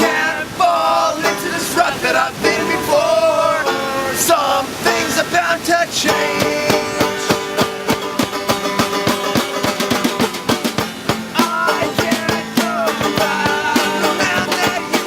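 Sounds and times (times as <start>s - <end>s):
person singing: 0.0s - 10.5s, 11.1s - 15.0s
strummed strings: 0.0s - 15.0s.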